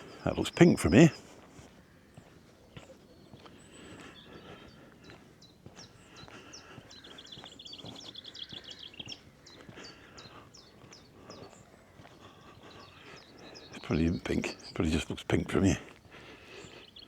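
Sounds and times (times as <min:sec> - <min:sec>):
songbirds chirping: 0:00.0 - 0:17.0
bird trill: 0:06.1 - 0:11.7.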